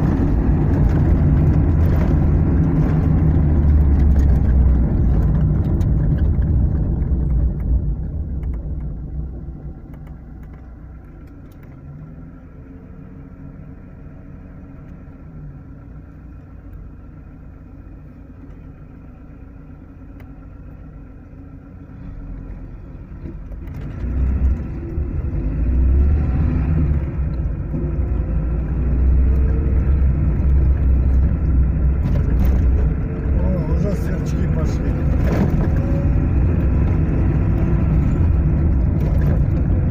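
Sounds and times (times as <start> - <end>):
car engine and road rumble: 0.0 - 39.9.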